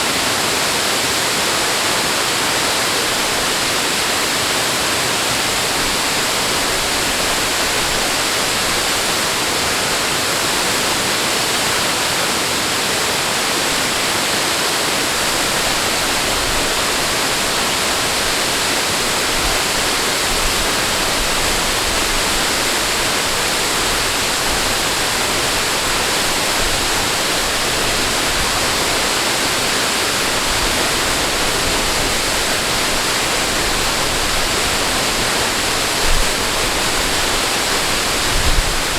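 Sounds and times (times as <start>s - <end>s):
rush of flowing water: 0.0s - 38.9s.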